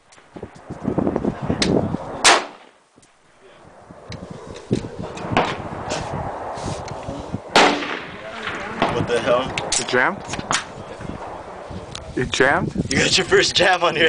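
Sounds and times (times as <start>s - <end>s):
rifle shots: 2.2s - 2.8s, 7.5s - 9.3s.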